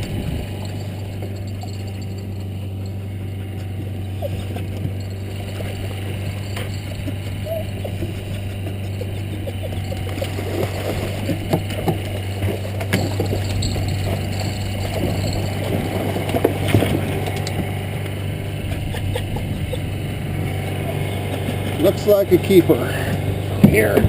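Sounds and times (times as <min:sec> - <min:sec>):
boat engine idling: 0:00.0 - 0:24.0.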